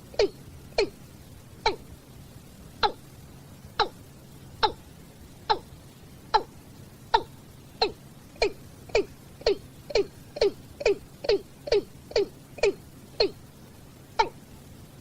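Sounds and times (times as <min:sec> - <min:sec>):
bird calling hollow notes: 0:00.0 - 0:01.0, 0:01.6 - 0:01.9, 0:02.8 - 0:03.0, 0:03.8 - 0:04.0, 0:04.6 - 0:04.8, 0:05.5 - 0:05.7, 0:06.3 - 0:13.4.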